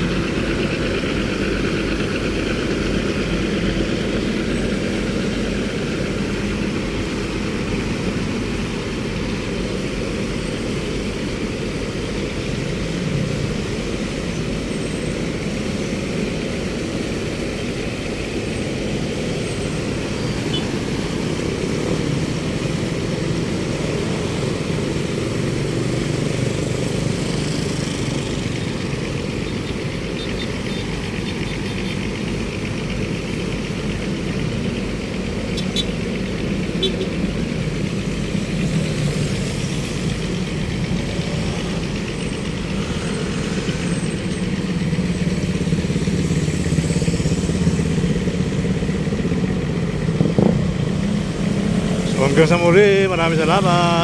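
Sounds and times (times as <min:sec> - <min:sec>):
road traffic noise: 0:00.0 - 0:54.0.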